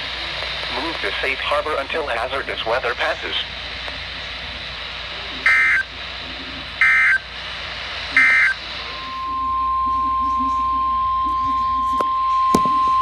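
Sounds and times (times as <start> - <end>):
radio hiss: 0.0 - 13.0
digital data tone bursts: 5.4 - 5.9, 6.8 - 7.3, 8.1 - 13.0
steady single-pitch alert tone: 5.5 - 5.9, 8.2 - 13.0.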